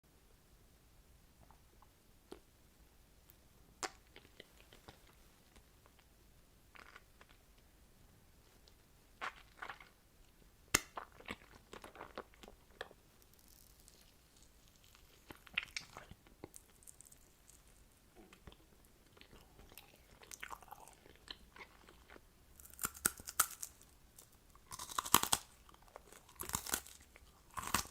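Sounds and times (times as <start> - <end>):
person chewing sweets: 10.8 - 27.9.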